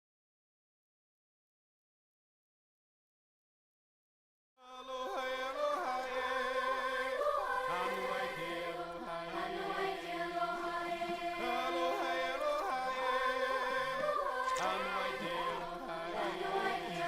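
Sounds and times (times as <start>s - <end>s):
choir holding sustained notes: 4.6s - 17.0s.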